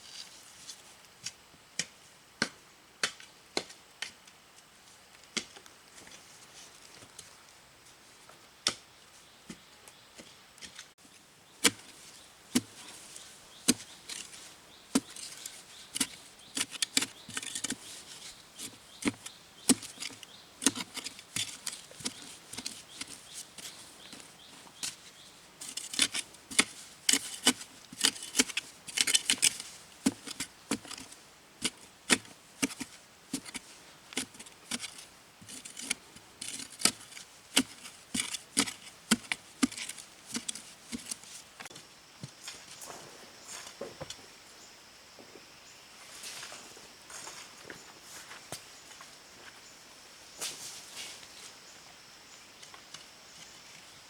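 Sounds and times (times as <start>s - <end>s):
scraping and rustling: 11.6s - 44.1s.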